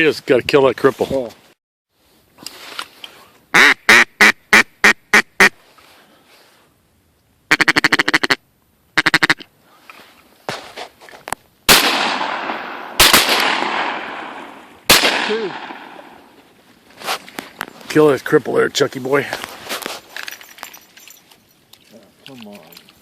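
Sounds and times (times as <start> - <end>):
duck quacking: 3.5 - 5.6, 7.5 - 8.4, 9.0 - 9.5
shotgun shots with echo: 11.7 - 16.3.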